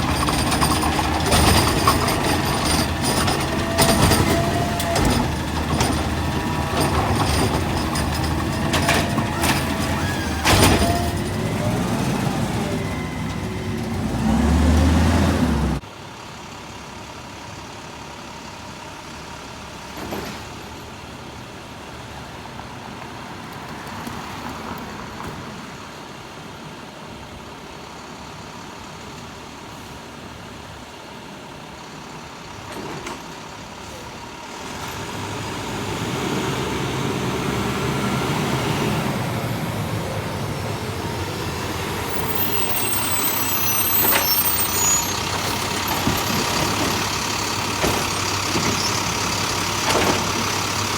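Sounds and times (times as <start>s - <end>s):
garbage truck engine running: 0.0s - 19.9s, 33.3s - 50.9s
low truck rumble: 0.0s - 22.3s, 33.4s - 50.9s.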